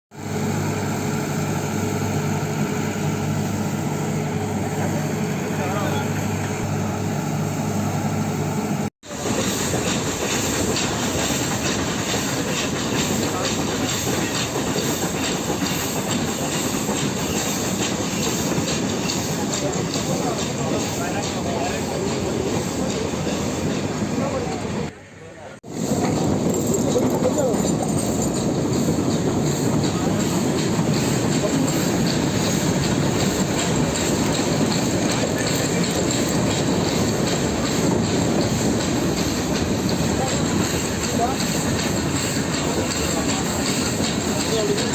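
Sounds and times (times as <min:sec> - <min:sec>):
train engine hum: 0:00.1 - 0:44.9
train wheels rattling: 0:09.0 - 0:24.9, 0:25.6 - 0:44.9
wheels clicking over rail joints: 0:09.1 - 0:24.6, 0:25.7 - 0:44.9.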